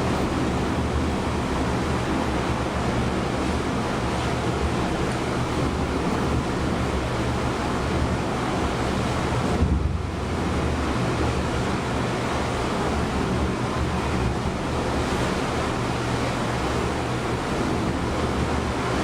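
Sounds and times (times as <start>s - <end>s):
ocean waves: 0.0s - 19.0s
wind buffeting microphone: 8.2s - 12.2s.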